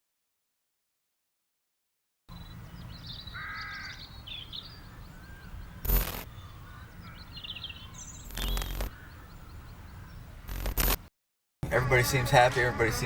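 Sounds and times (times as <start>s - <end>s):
low rumble of wind: 2.3s - 10.8s
small birds chirping: 2.3s - 11.0s.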